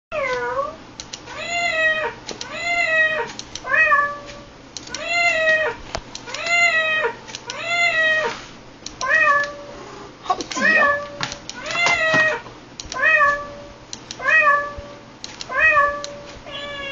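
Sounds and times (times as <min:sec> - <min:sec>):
cat meowing: 0:15.5 - 0:16.9.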